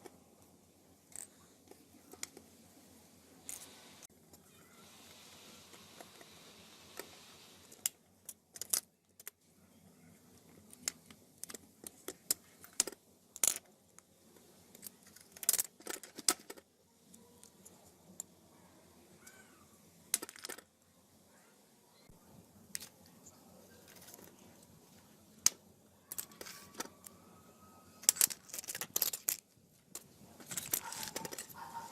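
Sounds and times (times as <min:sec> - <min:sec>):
faint hiss: 0:01.4 - 0:08.0
metal parts and tools clinking: 0:14.7 - 0:16.6, 0:20.1 - 0:20.7, 0:25.4 - 0:27.2, 0:28.0 - 0:31.9.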